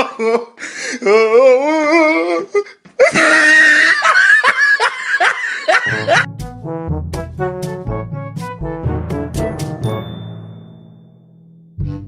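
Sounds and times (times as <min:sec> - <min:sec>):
loud laughter: 0:03.0 - 0:06.3
music with brass: 0:05.9 - 0:10.2.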